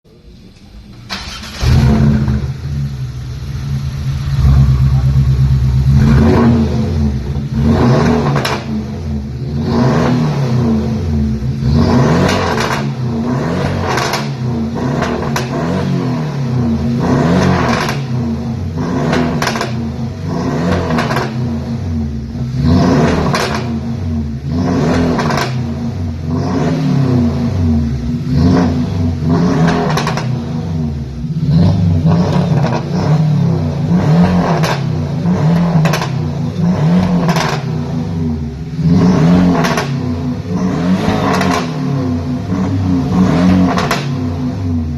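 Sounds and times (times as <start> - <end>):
car engine revving: 0.8 - 44.9
exhaust pops and crackles: 8.0 - 8.7, 12.2 - 13.0, 13.7 - 14.4, 15.0 - 15.6, 17.4 - 18.2, 19.1 - 19.8, 20.7 - 21.5, 23.0 - 23.8, 29.6 - 30.5, 34.3 - 37.9, 39.5 - 40.1, 43.6 - 44.4.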